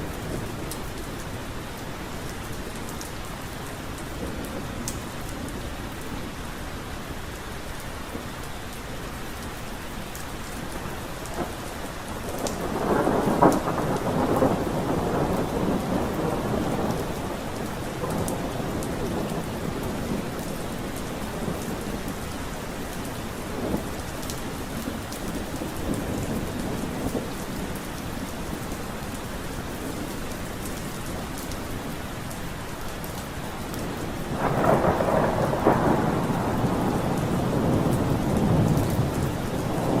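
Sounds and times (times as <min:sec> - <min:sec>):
rain falling: 0:00.0 - 0:40.0
thunder rumbling and cracking: 0:10.7 - 0:27.8, 0:33.8 - 0:40.0.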